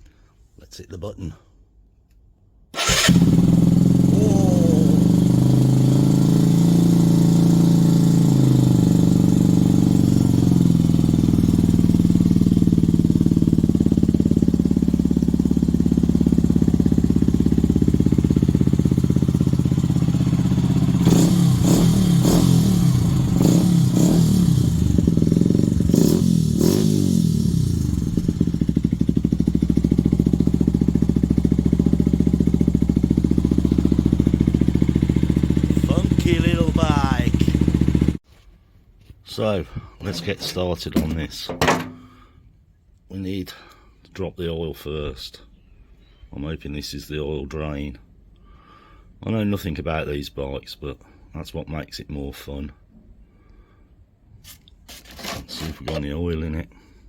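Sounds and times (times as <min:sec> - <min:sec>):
motorcycle engine idling and revving: 0:02.8 - 0:38.2.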